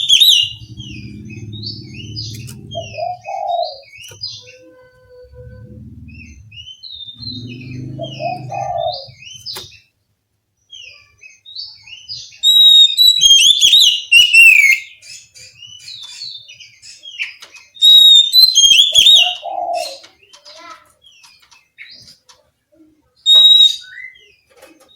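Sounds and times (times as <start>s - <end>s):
bird singing chirps and whistles: 0.0s - 4.6s, 11.5s - 17.1s, 17.8s - 20.0s, 23.3s - 24.3s
low sound: 0.3s - 3.3s, 5.2s - 9.2s.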